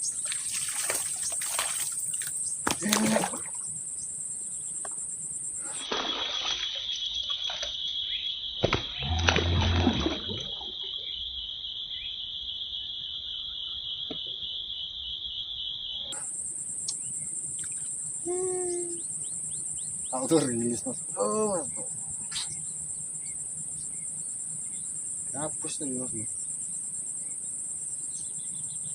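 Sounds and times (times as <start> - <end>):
water splashes: 0.0 - 3.7, 5.6 - 7.8, 8.6 - 10.8
insects buzzing shrilly: 0.0 - 28.9.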